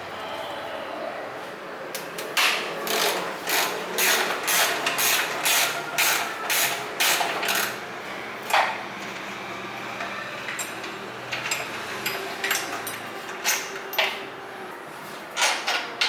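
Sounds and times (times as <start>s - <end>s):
hand ratchet clicking: 2.4s - 7.8s.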